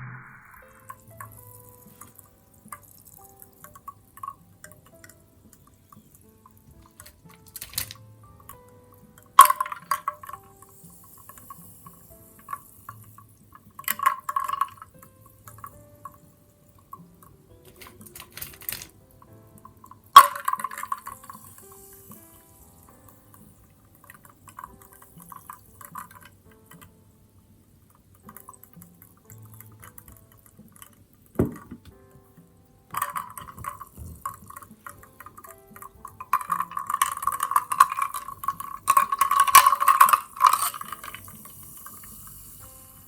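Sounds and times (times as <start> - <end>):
soft drink fizzing: 0.2 - 32.1, 32.9 - 43.0
drink poured into a glass: 20.2 - 26.3, 32.9 - 43.0.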